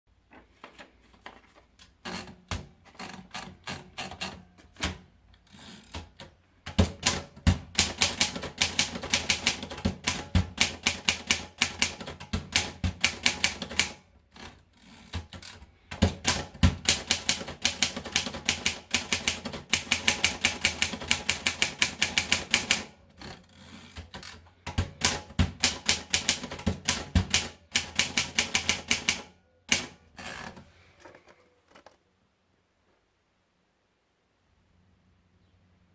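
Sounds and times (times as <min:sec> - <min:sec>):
manual typewriter keystrokes: 0:02.0 - 0:05.1, 0:05.8 - 0:30.6.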